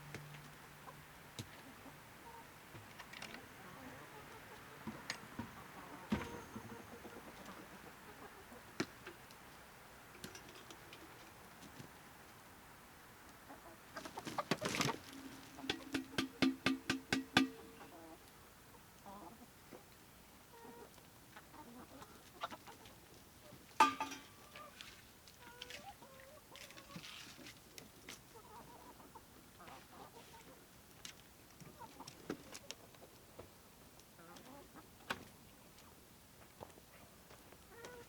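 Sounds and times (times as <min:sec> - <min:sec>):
chickens clucking: 0:00.8 - 0:09.5, 0:13.3 - 0:24.8, 0:28.2 - 0:30.6, 0:31.6 - 0:35.0.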